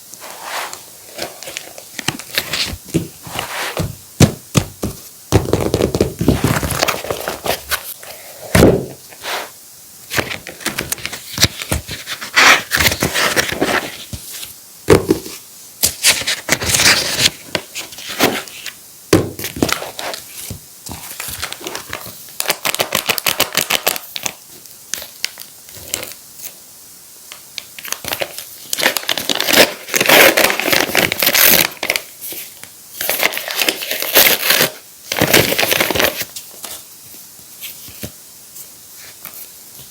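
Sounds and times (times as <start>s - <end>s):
packaging crinkling and rustling: 1.0s - 4.0s, 4.7s - 8.0s, 10.1s - 18.7s, 19.4s - 26.6s, 27.6s - 36.9s.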